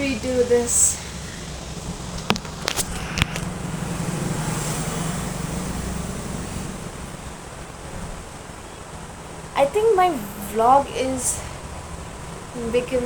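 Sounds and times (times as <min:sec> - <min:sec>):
vehicle driving past: 0:00.0 - 0:09.6.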